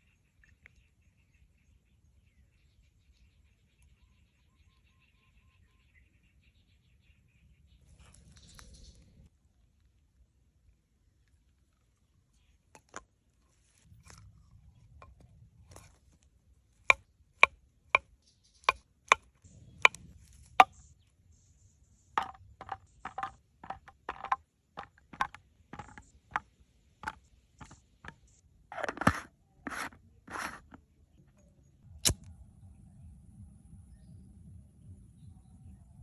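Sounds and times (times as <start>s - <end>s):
scraping sounds: 22.2s - 26.4s, 28.7s - 30.8s.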